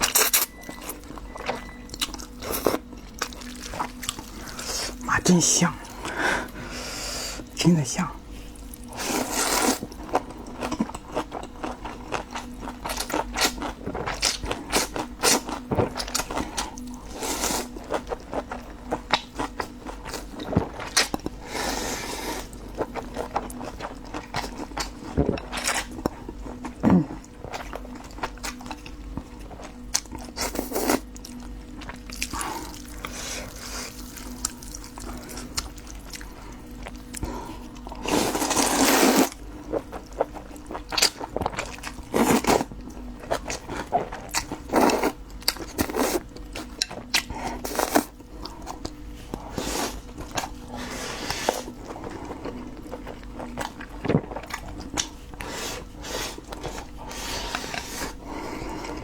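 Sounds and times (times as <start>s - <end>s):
wet chewing: 0.0s - 5.0s, 22.4s - 59.0s.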